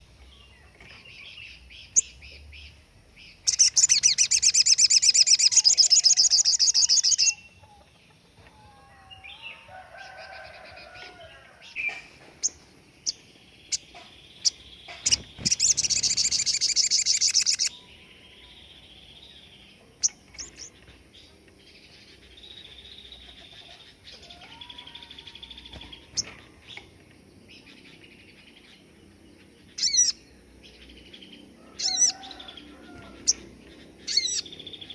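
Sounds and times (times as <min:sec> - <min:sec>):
soft bird chirps: 0:00.0 - 0:34.9
bird rapid rattling trills: 0:13.7 - 0:17.7.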